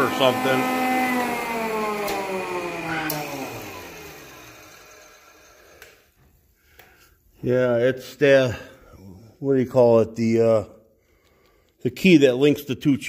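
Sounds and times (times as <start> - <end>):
planer motor whine winding down: 0.0 - 6.1.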